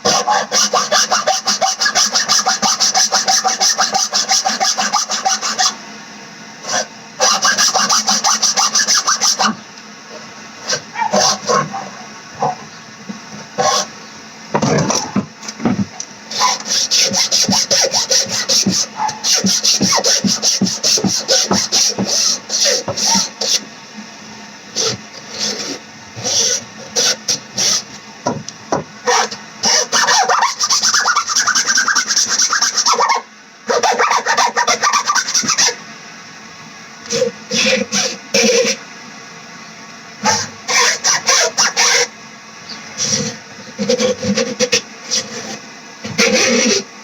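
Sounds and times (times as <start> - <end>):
hacksaw cutting: 0.0 - 5.8, 6.7 - 9.6, 10.7 - 11.7, 13.6 - 13.9, 14.6 - 23.6, 24.8 - 27.8, 29.1 - 35.8, 40.2 - 42.1, 43.0 - 46.9.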